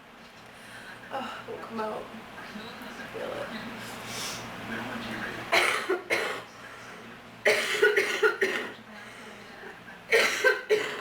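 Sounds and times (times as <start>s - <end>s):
person coughing: 5.6s - 6.5s, 7.5s - 8.8s, 10.1s - 11.0s.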